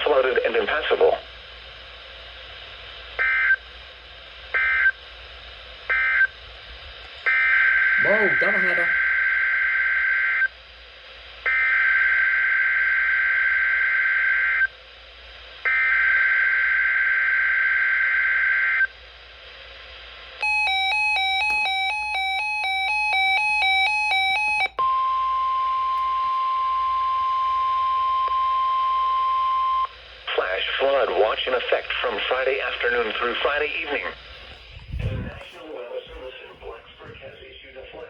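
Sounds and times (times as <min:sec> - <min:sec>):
steady warning alarm tone: 0:07.2 - 0:10.5, 0:20.4 - 0:30.0, 0:34.0 - 0:37.7.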